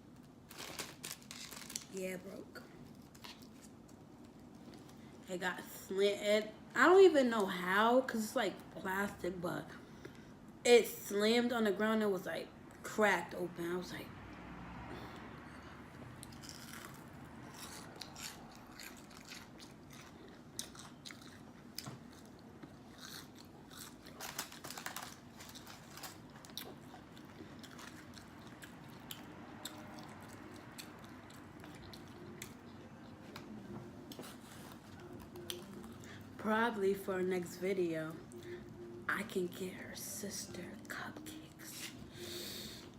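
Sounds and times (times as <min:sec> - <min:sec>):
person chewing crunchy food: 0:16.2 - 0:33.3.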